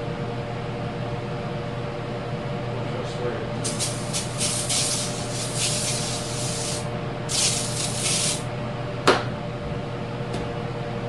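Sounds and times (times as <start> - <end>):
steady shop hum: 0.0 - 11.0
hissing spray bursts: 3.6 - 8.4.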